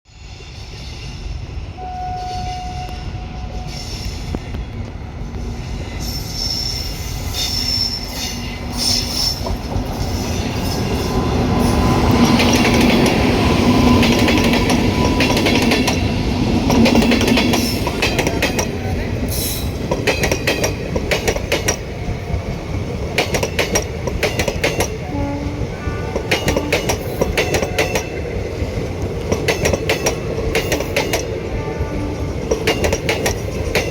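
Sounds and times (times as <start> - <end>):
train wheel squeal: 0.1 - 21.8, 23.5 - 28.2
train coaches rumbling: 0.1 - 33.9.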